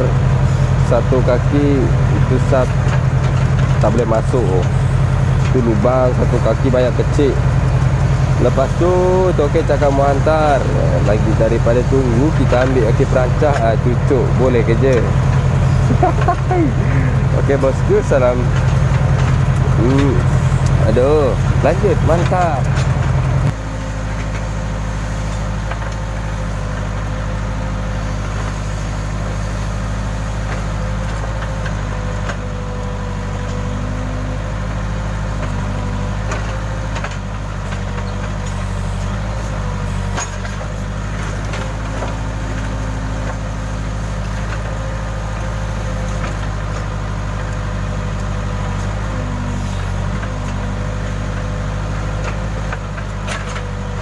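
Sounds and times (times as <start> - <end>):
steady whine: 0.0 - 24.3
knocks and clunks: 0.0 - 24.5
diesel engine under load: 0.0 - 54.0.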